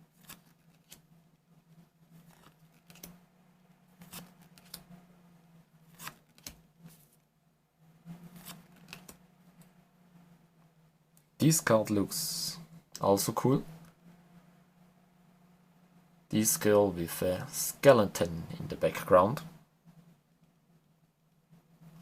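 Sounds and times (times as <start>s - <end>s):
low steady hum: 0.0s - 22.0s
cards clicking and rustling: 0.1s - 1.1s, 2.2s - 3.2s, 3.9s - 4.9s, 5.8s - 7.2s, 8.3s - 9.7s.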